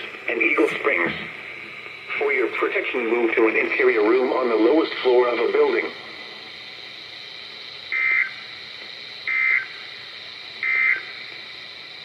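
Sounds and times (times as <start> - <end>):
steady radio hiss: 0.0 - 12.0
digital data tone bursts: 7.8 - 8.6, 9.2 - 10.0, 10.6 - 11.2.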